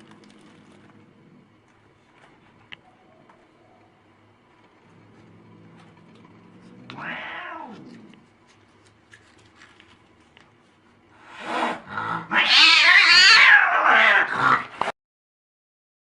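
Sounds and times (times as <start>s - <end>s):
cat meowing: 6.8s - 8.0s, 12.2s - 14.3s
cat yowling: 6.9s - 8.0s, 12.2s - 14.7s.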